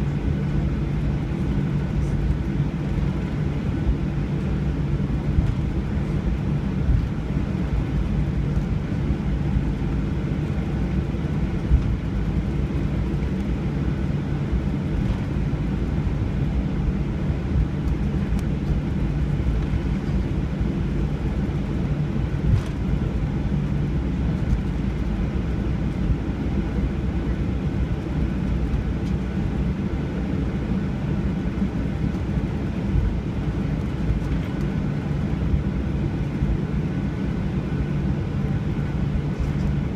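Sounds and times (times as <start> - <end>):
airliner cabin engine drone: 0.0 - 39.9.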